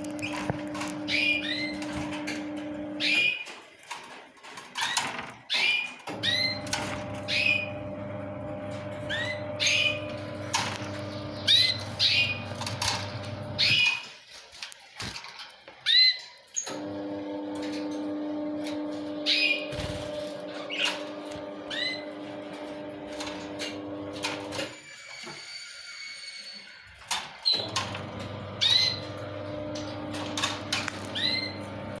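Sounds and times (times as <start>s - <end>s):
lovebirds chirping: 0.0s - 3.5s, 9.0s - 14.2s, 19.2s - 19.8s, 28.6s - 32.0s.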